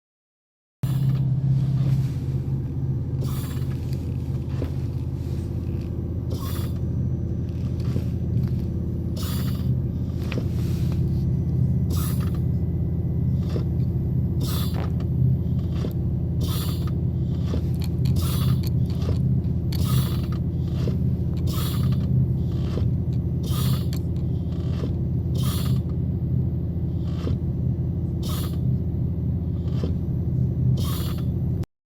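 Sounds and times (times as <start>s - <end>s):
brake hiss: 0.8s - 12.5s, 14.4s - 26.0s, 26.9s - 27.4s, 28.2s - 28.7s, 30.8s - 31.4s
car engine idling: 0.8s - 31.6s.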